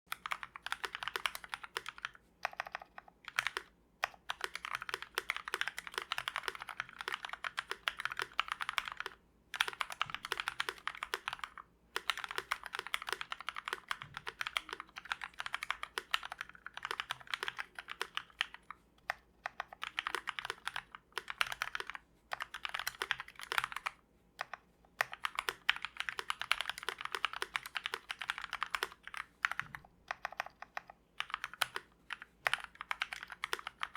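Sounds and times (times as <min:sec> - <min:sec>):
fast typing on mechanical keyboard: 0:00.1 - 0:33.9.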